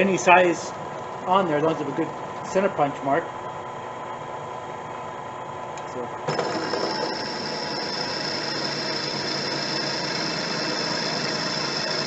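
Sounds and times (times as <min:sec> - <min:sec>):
electric drill whining: 0:06.3 - 0:12.0.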